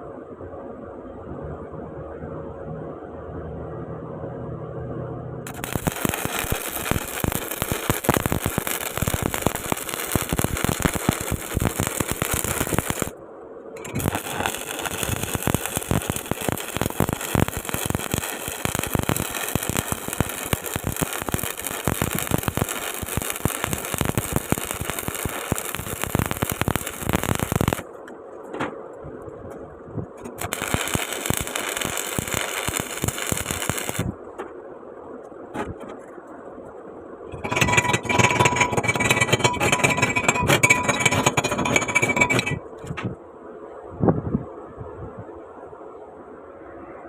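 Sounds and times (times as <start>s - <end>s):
welding arc crackling: 5.5s - 13.2s, 13.8s - 27.9s, 30.2s - 34.2s, 37.3s - 43.0s.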